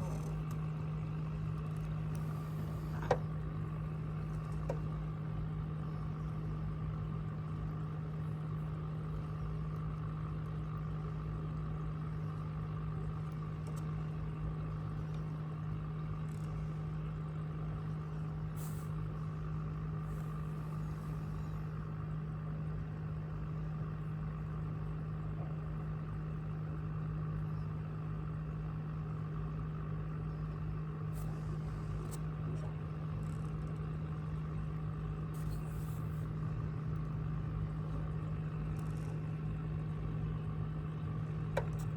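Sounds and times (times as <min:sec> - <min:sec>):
motor humming: 0:00.0 - 0:09.4, 0:31.0 - 0:41.9.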